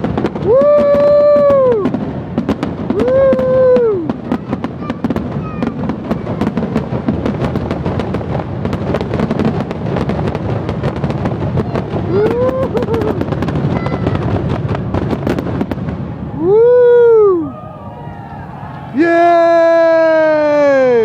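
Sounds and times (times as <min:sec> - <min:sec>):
fireworks crackling and banging: 0:00.0 - 0:21.0
pitched whistling sound: 0:16.1 - 0:21.0.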